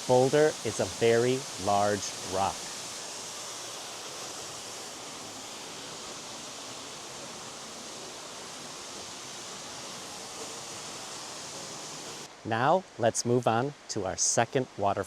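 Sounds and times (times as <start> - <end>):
waterfall rushing: 0.0 - 14.8.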